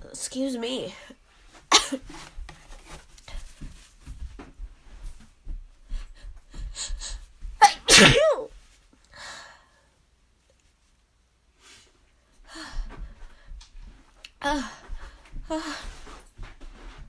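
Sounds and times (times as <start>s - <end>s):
person sneezing: 1.7s - 2.3s, 7.6s - 8.5s
breathing: 9.1s - 10.0s, 11.6s - 13.7s, 14.6s - 16.2s.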